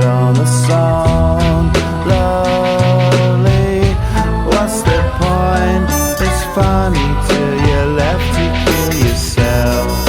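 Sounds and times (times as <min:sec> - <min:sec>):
instrumental pop music: 0:00.0 - 0:10.0.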